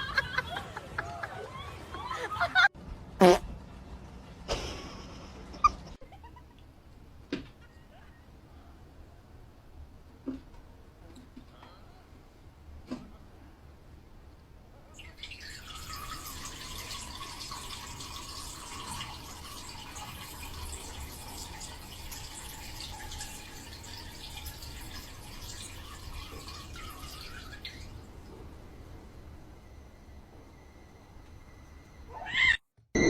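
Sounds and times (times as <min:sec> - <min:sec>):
tap water running and splashing: 0:15.0 - 0:28.2.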